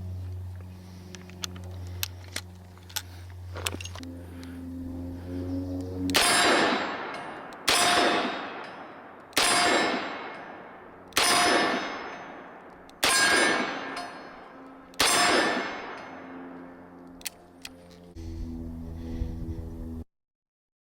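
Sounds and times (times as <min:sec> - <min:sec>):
revolver shots with ringing decay: 0:06.1 - 0:16.6.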